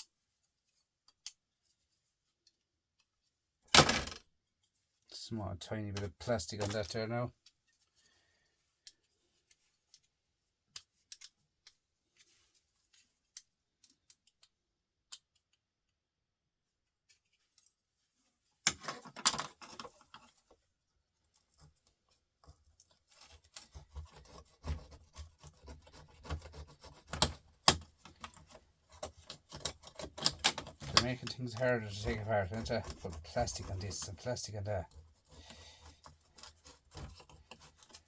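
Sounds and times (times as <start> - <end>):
scraping and snipping: 8.8 - 15.6, 18.6 - 20.6, 21.2 - 38.0.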